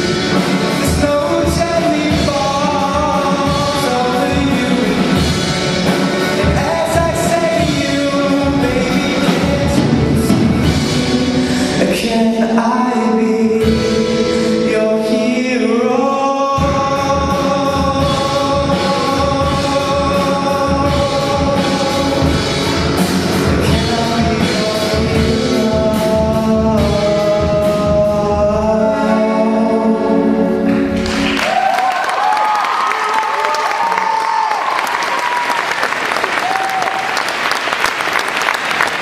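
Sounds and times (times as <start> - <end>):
drum beat: 0.0 - 11.5, 16.6 - 28.0
rock band playing live: 0.0 - 39.0
applause: 31.0 - 39.0.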